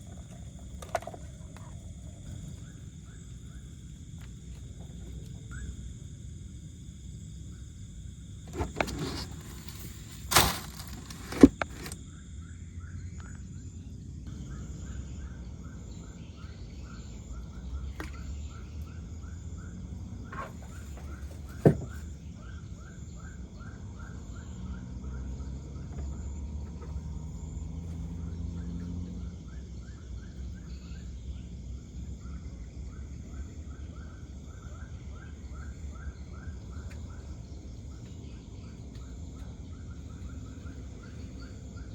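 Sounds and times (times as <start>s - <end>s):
cricket trill: 0.0s - 41.9s
rapid insect chirping: 0.0s - 41.9s.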